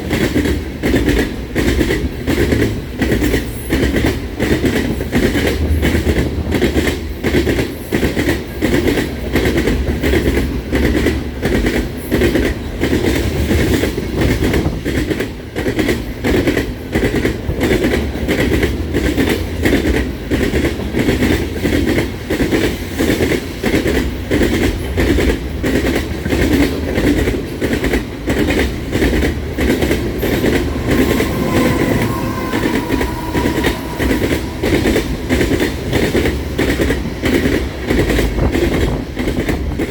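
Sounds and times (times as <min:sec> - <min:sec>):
freight train rumble: 0:00.0 - 0:39.9
train wheels clicking over rail joints: 0:00.0 - 0:39.9
faint thin squeal: 0:29.6 - 0:36.7.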